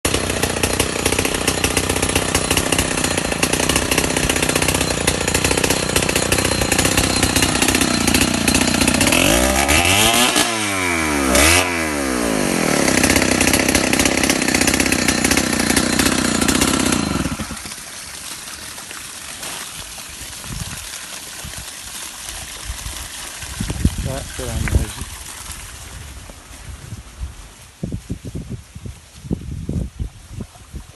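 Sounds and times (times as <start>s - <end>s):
loud engine running: 0.1s - 17.6s.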